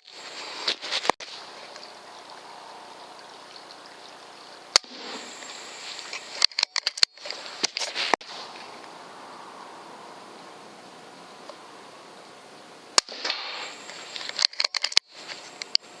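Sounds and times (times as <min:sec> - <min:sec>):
faint outdoor hiss: 0:00.0 - 0:16.0
air rifle shot: 0:04.8 - 0:05.3, 0:13.0 - 0:13.8
sharp clicks and knocks: 0:06.1 - 0:08.2, 0:14.2 - 0:15.9.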